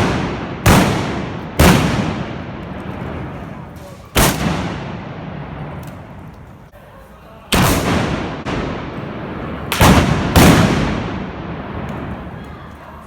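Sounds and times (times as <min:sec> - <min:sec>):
gunshots with echoing tail: 0:00.0 - 0:03.4, 0:04.2 - 0:05.8, 0:07.6 - 0:12.0.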